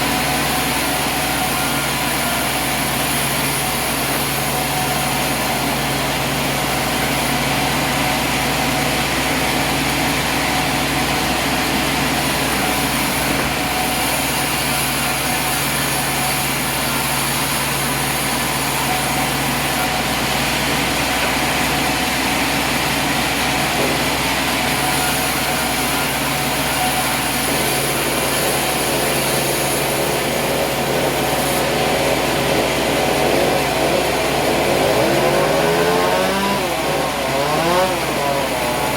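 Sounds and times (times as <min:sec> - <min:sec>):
engine running steadily: 0:00.0 - 0:38.9
high whine: 0:00.0 - 0:38.9.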